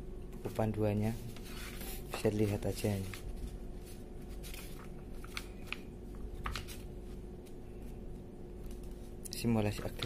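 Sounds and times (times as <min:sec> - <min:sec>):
faint hum: 0:00.0 - 0:10.0
paper clicks and rustles: 0:01.3 - 0:07.6, 0:08.6 - 0:10.0.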